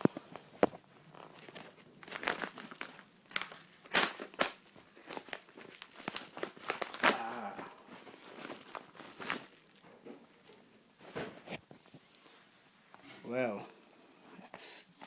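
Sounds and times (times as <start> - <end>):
packaging crinkling and tearing: 1.1 - 10.6.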